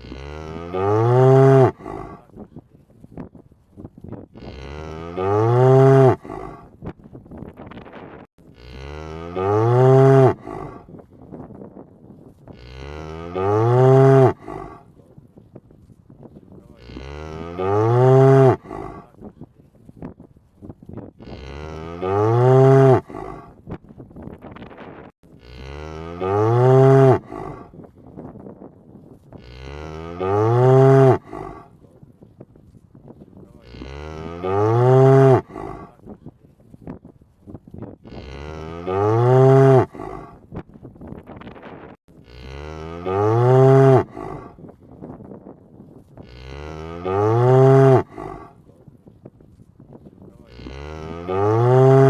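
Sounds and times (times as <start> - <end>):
cow mooing: 0.0 - 2.3, 4.4 - 6.7, 8.5 - 10.9, 12.6 - 14.8, 16.7 - 19.1, 21.2 - 23.5, 25.4 - 27.7, 29.4 - 31.7, 33.6 - 36.0, 38.0 - 40.4, 42.2 - 44.6, 46.2 - 48.6, 50.4 - 52.0.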